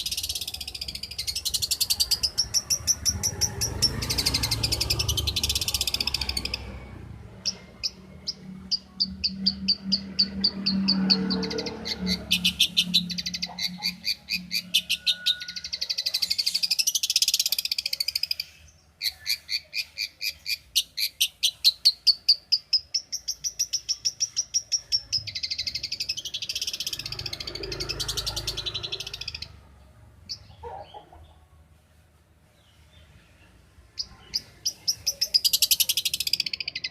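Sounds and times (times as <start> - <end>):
bird singing rapid high notes: 7.4 - 29.6.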